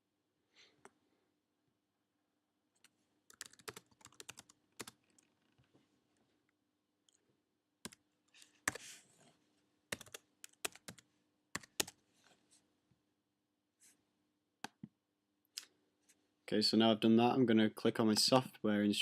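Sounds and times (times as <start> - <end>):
computer keyboard typing: 3.3 - 5.2, 9.9 - 12.0.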